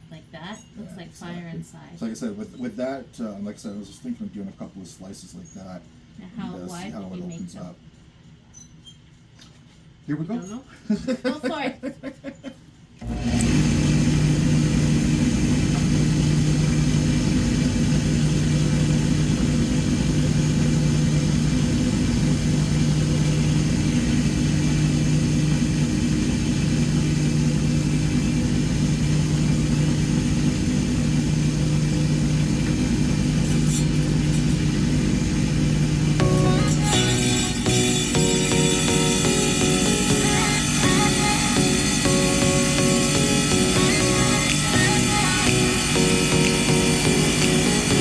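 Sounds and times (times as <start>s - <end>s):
rock saw grinding stone: 36.2s - 48.0s.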